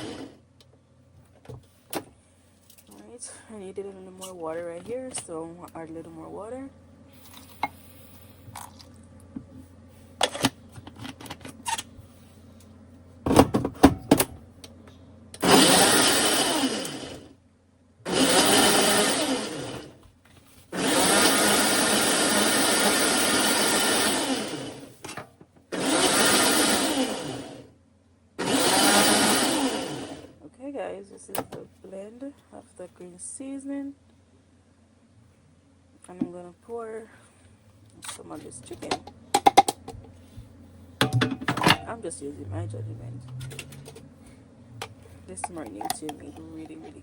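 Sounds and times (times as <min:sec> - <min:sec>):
electric blender pureeing: 0:00.0 - 0:00.4, 0:15.4 - 0:17.3, 0:18.1 - 0:20.0, 0:20.7 - 0:25.0, 0:25.7 - 0:27.7, 0:28.4 - 0:30.4
clicks and knocks: 0:41.0 - 0:41.9.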